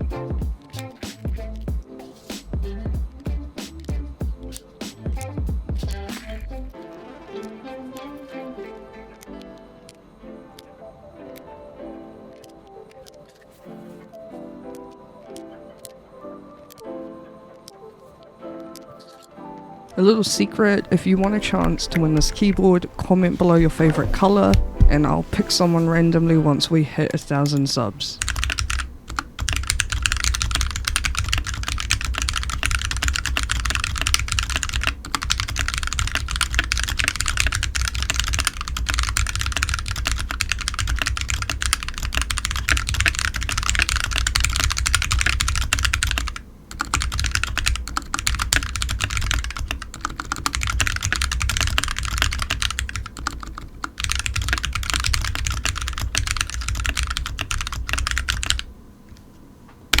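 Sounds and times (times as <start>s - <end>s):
mechanical keyboard typing: 20.0s - 58.7s.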